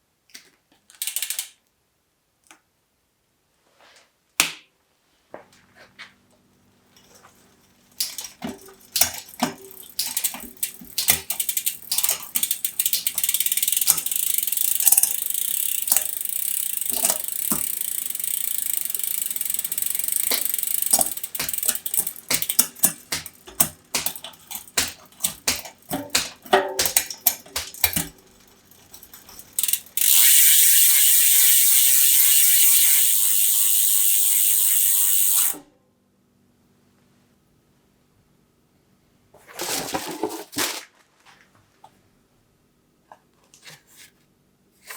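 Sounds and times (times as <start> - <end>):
bicycle ratcheting clicks: 1.0 - 1.6, 7.0 - 35.6.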